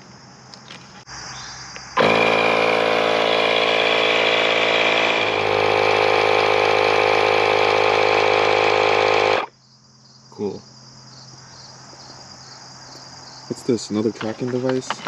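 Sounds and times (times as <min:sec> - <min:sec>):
tire inflator compressor running: 0:02.0 - 0:09.5.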